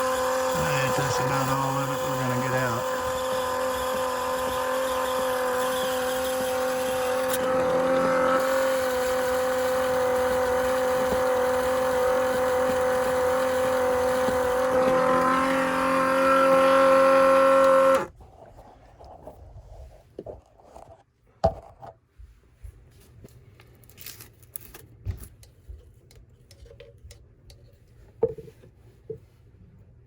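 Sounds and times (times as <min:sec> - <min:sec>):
small electric motor whining: 0:00.0 - 0:18.1.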